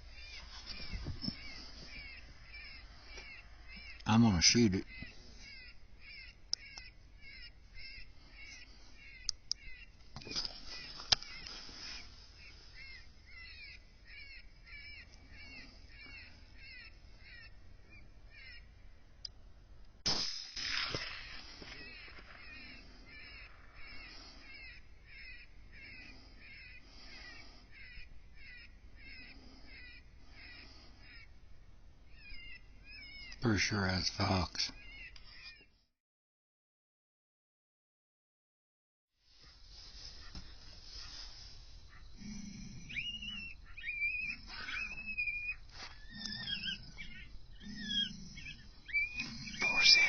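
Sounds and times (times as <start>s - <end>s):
fox yelping: 41.9s - 50.0s
high-pitched whining animal calls: 41.9s - 50.0s.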